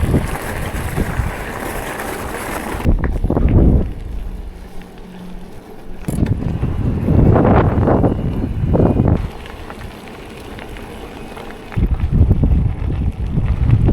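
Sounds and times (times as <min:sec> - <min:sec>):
bicycle rumble on trail: 0:00.0 - 0:13.9
wind buffeting microphone: 0:00.0 - 0:13.9.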